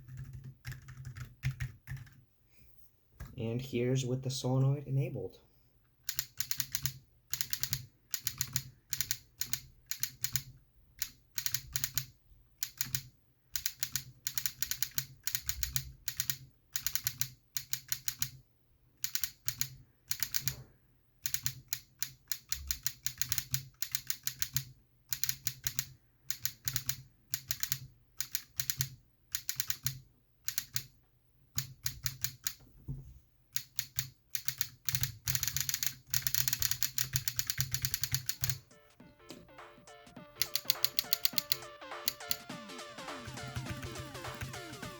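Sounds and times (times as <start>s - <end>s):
mechanical keyboard typing: 0.0s - 2.2s, 6.1s - 18.4s, 19.0s - 30.9s, 31.6s - 32.6s, 33.6s - 39.5s, 40.4s - 42.5s, 43.2s - 44.9s
solenoid firing on keypress: 40.4s - 42.4s.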